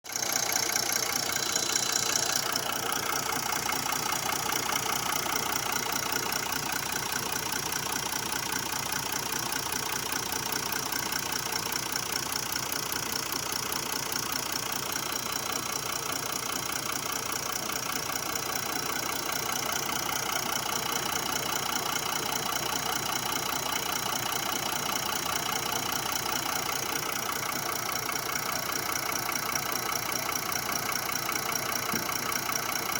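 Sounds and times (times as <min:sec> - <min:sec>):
diesel engine idling with knocking: 0:00.1 - 0:32.9.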